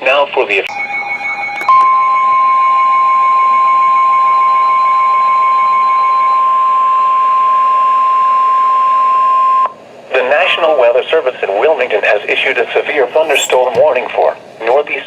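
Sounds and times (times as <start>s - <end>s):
loud high steady beep: 0.7s - 9.8s.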